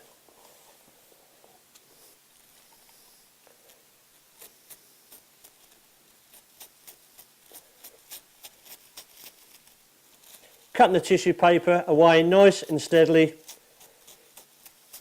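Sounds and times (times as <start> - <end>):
scissors snipping tissue paper: 4.4 - 10.7, 12.4 - 15.0.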